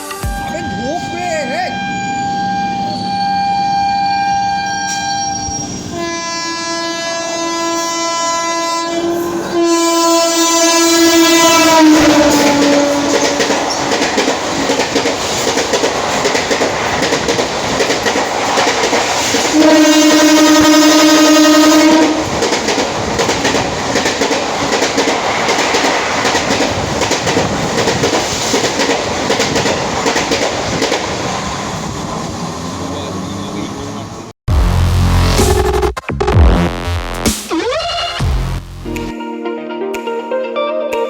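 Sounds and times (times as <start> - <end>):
train horn blasts: 0.0 - 13.8, 19.5 - 22.4
train coaches rattling past: 0.0 - 34.3.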